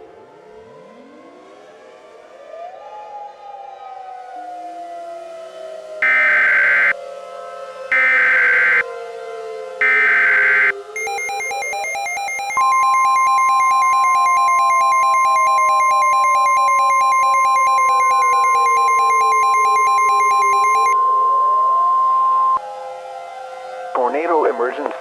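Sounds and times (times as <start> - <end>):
steady alert tone: 6.0 - 6.9, 7.9 - 8.8, 9.8 - 21.0
slow rising and falling siren: 6.0 - 7.0, 7.9 - 8.8, 9.8 - 21.0
fast pulsing electronic pattern: 9.8 - 21.0.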